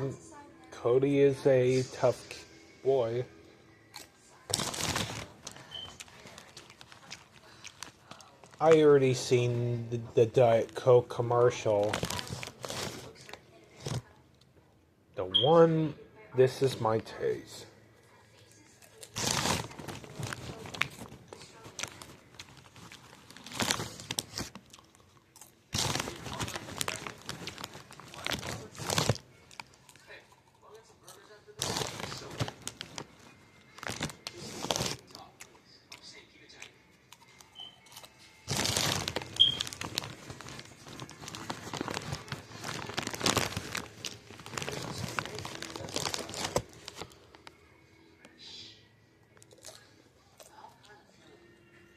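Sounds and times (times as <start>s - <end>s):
person chewing popcorn: 3.9s - 8.8s, 18.4s - 47.5s, 49.3s - 51.4s.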